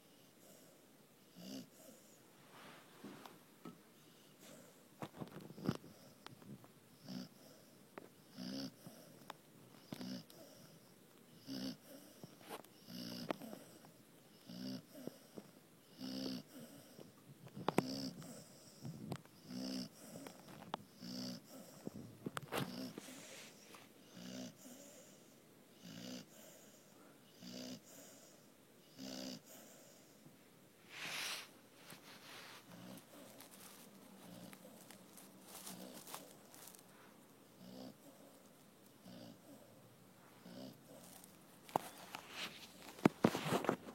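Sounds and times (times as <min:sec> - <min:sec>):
person snoring: 0:21.0 - 0:23.5.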